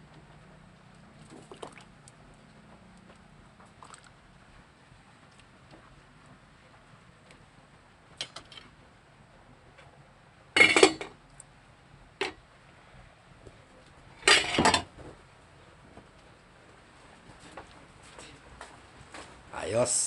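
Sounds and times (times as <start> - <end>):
pot and utensils clattering: 10.6 - 11.1, 14.2 - 14.9.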